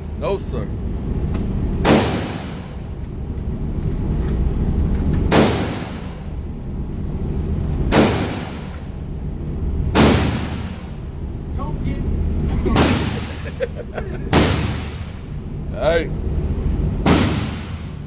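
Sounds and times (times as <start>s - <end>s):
steady low hum: 0.0s - 18.0s
gunshots with ringing tail: 12.7s - 13.5s, 14.3s - 15.3s.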